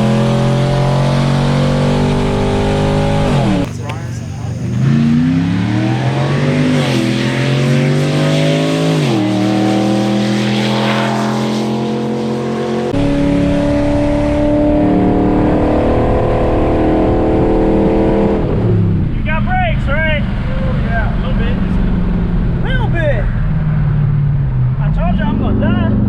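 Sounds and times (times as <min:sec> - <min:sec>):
deeper engine rumble: 0:00.0 - 0:06.7, 0:12.9 - 0:26.0
car engine at full throttle: 0:00.0 - 0:26.0.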